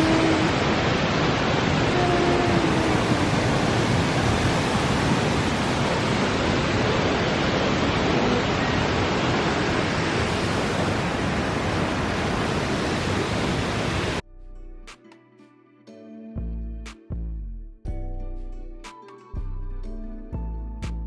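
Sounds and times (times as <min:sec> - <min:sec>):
waterfall roaring: 0:00.0 - 0:14.2.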